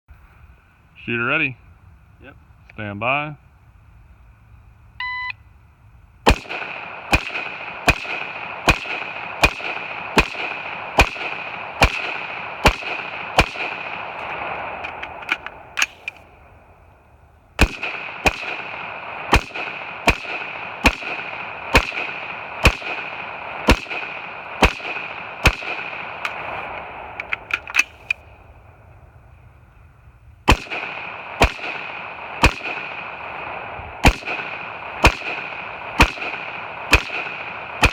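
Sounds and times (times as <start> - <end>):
shot timer beep: 5.0 - 5.4
gunshots: 6.2 - 16.2, 17.6 - 28.2, 30.4 - 37.9.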